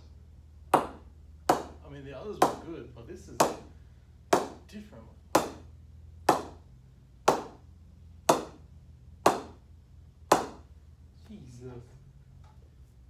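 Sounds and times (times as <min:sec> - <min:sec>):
cricket bat wooden knocks: 0:00.8 - 0:01.8, 0:03.4 - 0:03.7, 0:04.3 - 0:04.7, 0:05.4 - 0:05.7, 0:06.3 - 0:06.6, 0:07.3 - 0:07.6, 0:08.3 - 0:08.6, 0:09.3 - 0:09.6, 0:10.3 - 0:10.7.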